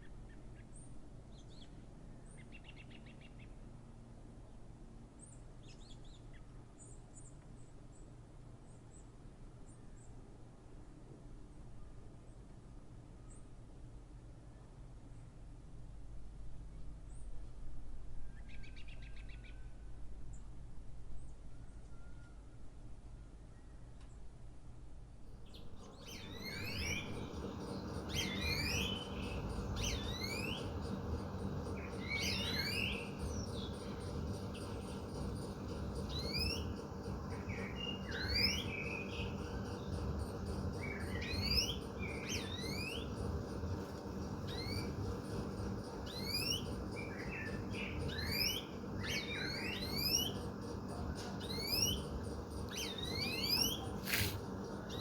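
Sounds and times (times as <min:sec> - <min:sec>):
city background hum: 0:22.6 - 0:55.0
birds chirping: 0:25.5 - 0:55.0.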